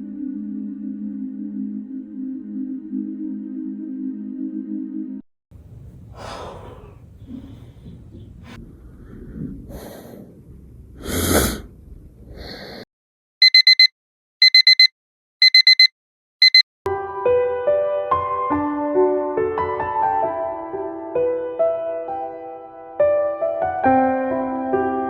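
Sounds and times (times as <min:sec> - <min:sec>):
rustling and breathy noises: 0:05.6 - 0:12.9
electronic alarm beeping: 0:13.4 - 0:16.6.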